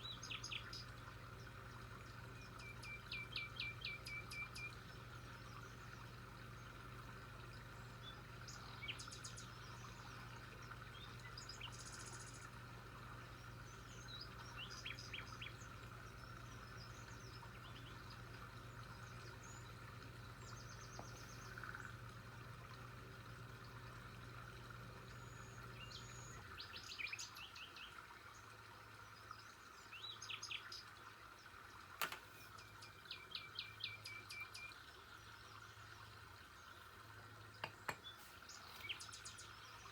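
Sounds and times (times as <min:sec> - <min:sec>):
faint birds chirping: 0:00.0 - 0:39.9
low steady hum: 0:00.0 - 0:39.9.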